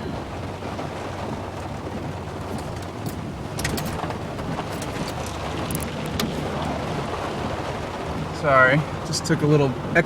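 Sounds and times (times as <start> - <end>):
truck engine running: 0.0 - 9.6
rain and water rushing: 0.0 - 10.0
sharp clicks and knocks: 2.5 - 6.4.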